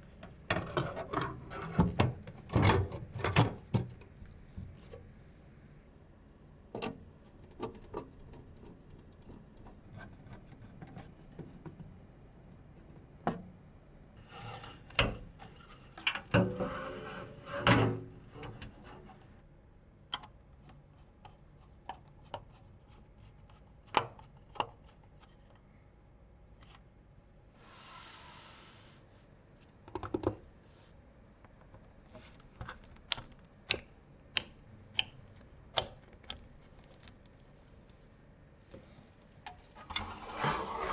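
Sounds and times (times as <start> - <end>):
rubbing and handling noise: 35.2 - 40.9.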